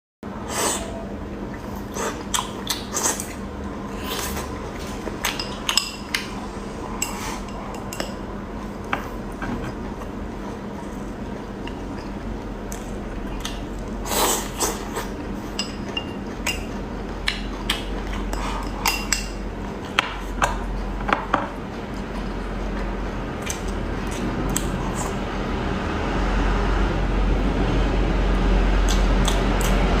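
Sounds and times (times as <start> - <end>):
low hum: 0.2 - 30.0
utensils clinking on dishes: 14.5 - 16.8.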